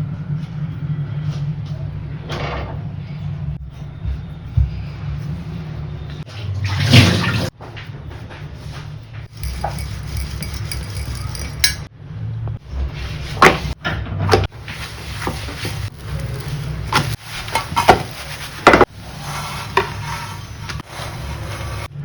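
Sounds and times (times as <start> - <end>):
metal utensils clinking on pans: 9.3 - 11.9, 14.7 - 18.9.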